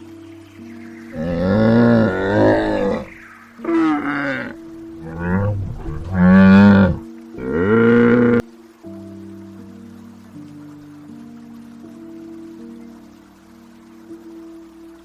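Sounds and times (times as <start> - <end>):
faint steady background tones: 0.0 - 15.0
animal calling with quavering cry: 1.1 - 8.4.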